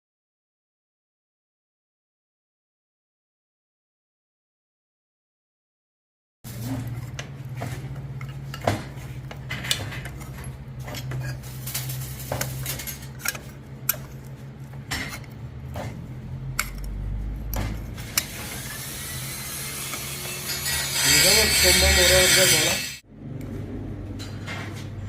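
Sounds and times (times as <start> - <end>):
steady low hum: 6.5 - 20.7.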